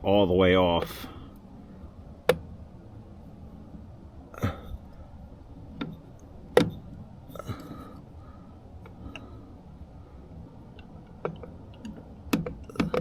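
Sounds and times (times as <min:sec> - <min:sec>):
clicks and knocks on metal linkage: 0:10.8 - 0:13.0.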